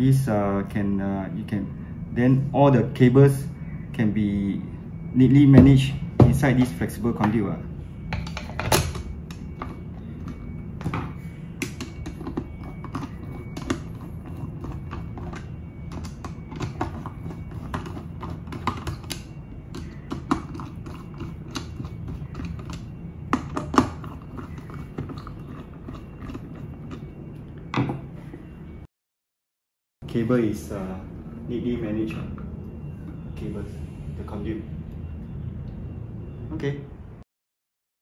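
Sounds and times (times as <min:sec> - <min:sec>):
steady low hum: 0:00.0 - 0:28.9.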